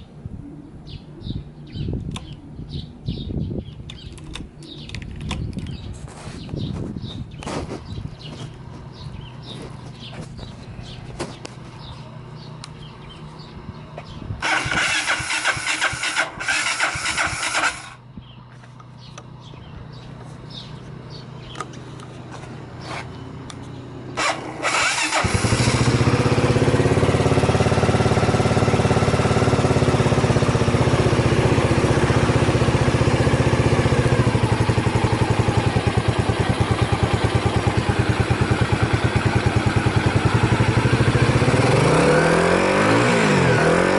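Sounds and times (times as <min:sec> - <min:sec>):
motorcycle engine idling: 0:07.2 - 0:42.0
motorcycle engine cranking: 0:14.4 - 0:18.0, 0:24.2 - 0:27.2.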